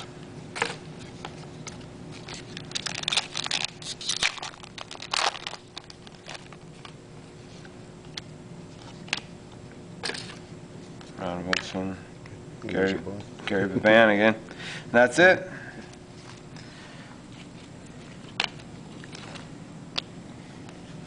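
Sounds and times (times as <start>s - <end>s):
cards flicking and rustling: 0.6s - 7.0s.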